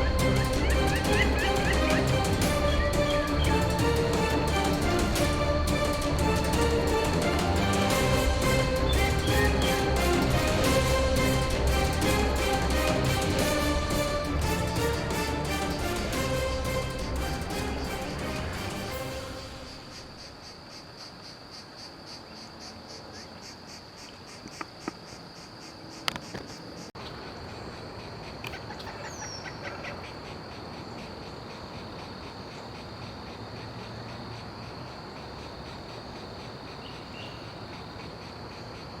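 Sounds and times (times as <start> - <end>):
insects trilling: 0.0 - 10.5, 14.4 - 39.0.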